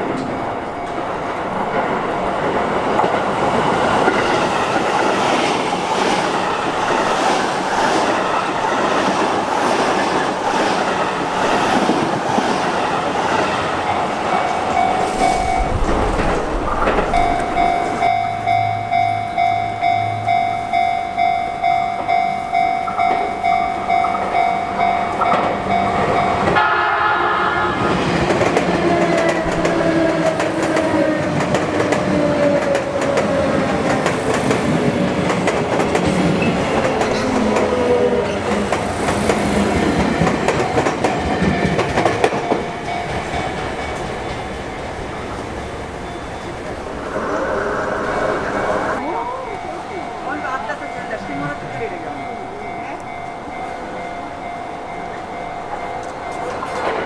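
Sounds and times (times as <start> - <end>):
level crossing warning bell: 0.0 - 2.6, 13.8 - 30.9, 39.7 - 47.0, 49.0 - 57.0
train horn tone: 25.0 - 29.7
train wheels clacking over rail joints: 28.1 - 45.4, 56.0 - 57.0.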